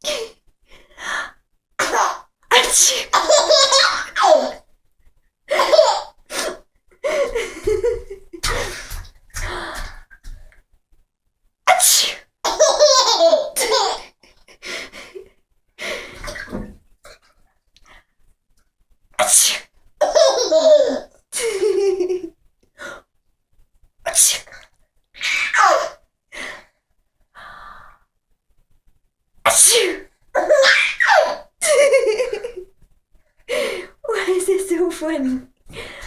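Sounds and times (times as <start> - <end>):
baby laughing: 3.0 - 4.6, 5.5 - 6.5, 12.5 - 14.2, 20.0 - 22.3, 25.2 - 26.0, 30.4 - 32.6
woman sneezing: 29.5 - 30.1.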